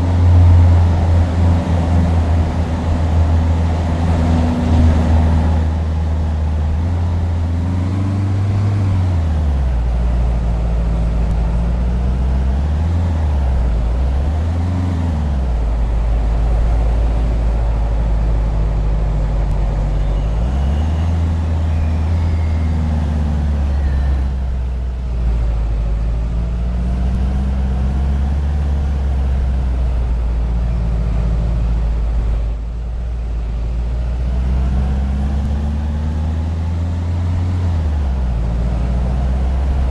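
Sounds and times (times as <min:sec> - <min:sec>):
vehicle motor revving: 0:00.0 - 0:39.9.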